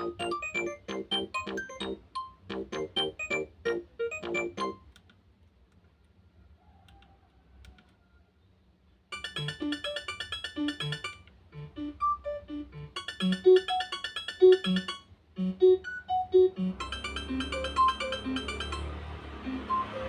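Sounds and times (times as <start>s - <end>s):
synthesized phone ringtone: 0.0s - 4.8s, 9.1s - 20.0s
faint clicks: 6.8s - 8.0s.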